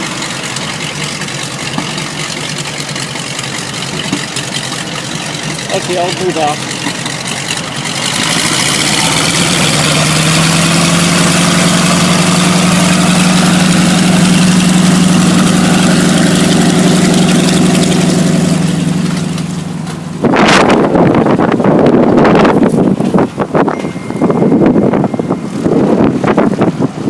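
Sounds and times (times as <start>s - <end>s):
airplane engine droning: 0.0s - 27.0s
wind buffeting microphone: 7.9s - 27.0s.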